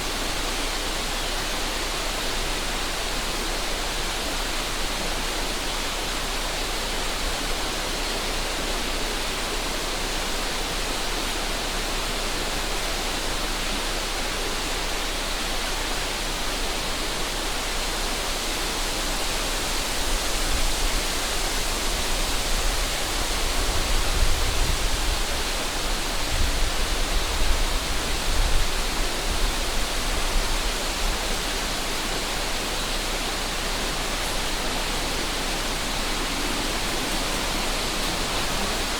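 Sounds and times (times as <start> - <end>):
river water flowing: 0.0 - 24.3, 25.2 - 38.9
wind buffeting microphone: 20.0 - 31.7.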